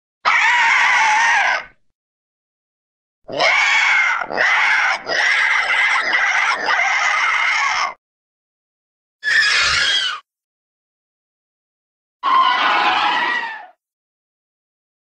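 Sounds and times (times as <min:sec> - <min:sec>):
creature screeching: 0:00.2 - 0:01.8, 0:03.3 - 0:08.0, 0:09.2 - 0:10.3, 0:12.2 - 0:13.8.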